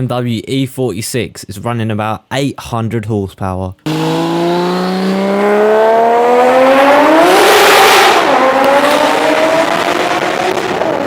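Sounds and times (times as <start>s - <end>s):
car engine revving: 3.9s - 11.0s.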